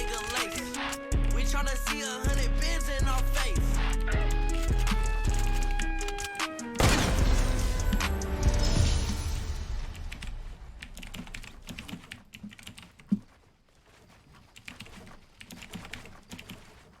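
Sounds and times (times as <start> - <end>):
typing on computer keyboard: 0.0 - 1.4, 4.5 - 6.6, 10.9 - 13.2.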